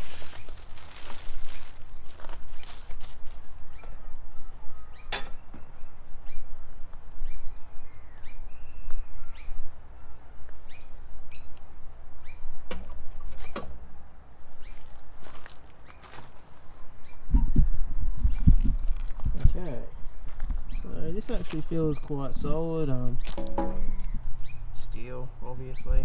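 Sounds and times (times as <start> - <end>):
small birds chirping: 0.4 - 12.5, 14.6 - 15.0, 15.6 - 17.4, 20.5 - 26.0.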